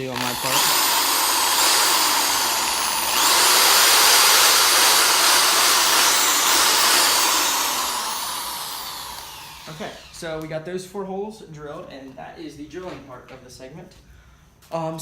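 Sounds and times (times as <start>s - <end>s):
power drill boring through plastic: 0.0s - 10.3s.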